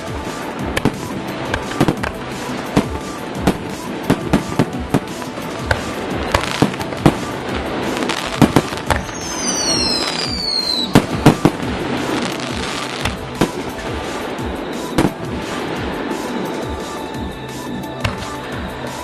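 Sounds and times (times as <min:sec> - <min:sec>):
firework bangs: 0:00.0 - 0:17.3
falling firework whistle: 0:00.0 - 0:19.0
fireworks crackling: 0:00.0 - 0:19.0.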